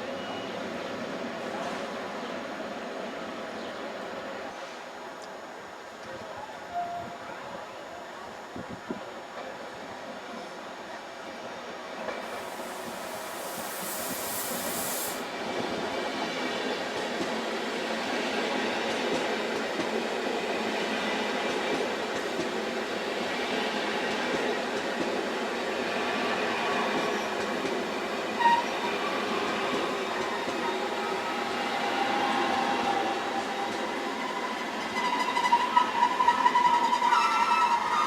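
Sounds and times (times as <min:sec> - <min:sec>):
train running on rails: 0:00.0 - 0:38.0
high hiss: 0:12.2 - 0:15.4.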